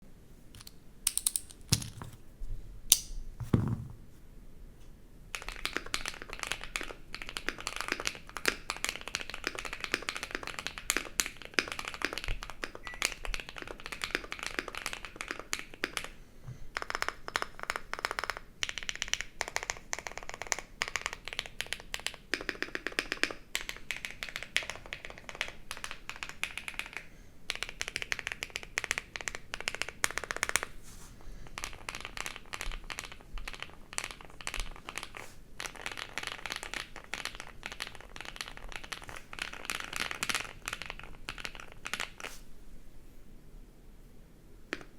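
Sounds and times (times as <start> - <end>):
dull knock: 3.4 - 4.0
mechanical keyboard typing: 5.3 - 16.1, 16.8 - 30.7, 31.6 - 42.3.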